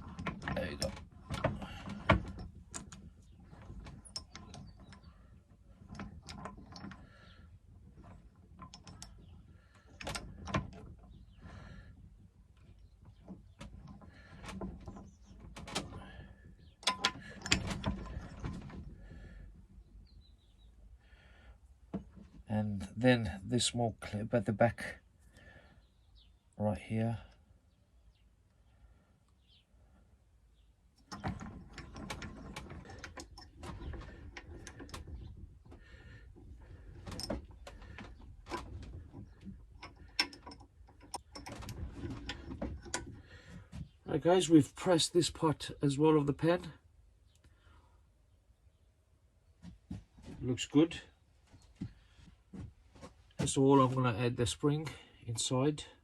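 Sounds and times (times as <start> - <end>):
clicks and knocks of small parts: 0.0 - 5.1, 7.9 - 11.6, 16.6 - 19.0, 31.0 - 43.9.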